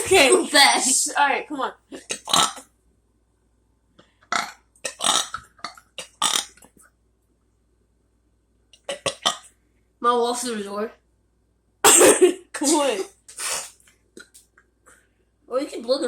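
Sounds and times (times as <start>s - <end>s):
person burping: 2.0s - 2.6s, 4.3s - 6.6s, 8.8s - 9.4s.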